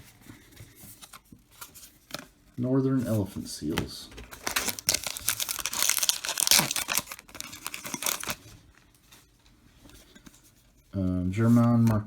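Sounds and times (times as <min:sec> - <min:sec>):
foil wrapper tearing and crinkling: 0:04.3 - 0:08.6.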